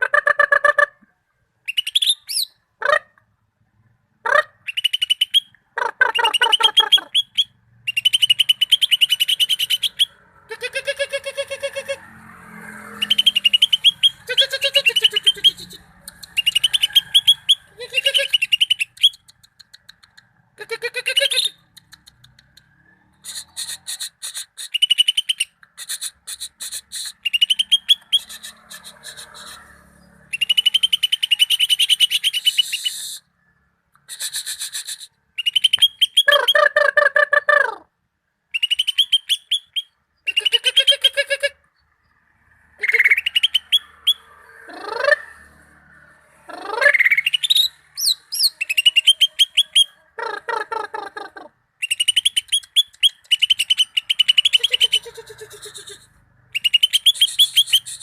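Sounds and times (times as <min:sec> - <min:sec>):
bird singing with chattering trills: 0:01.6 - 0:02.6, 0:04.6 - 0:12.0, 0:13.0 - 0:33.3, 0:34.0 - 0:36.7, 0:38.5 - 0:42.2, 0:42.8 - 0:44.3, 0:46.7 - 0:50.0, 0:51.8 - 0:58.0.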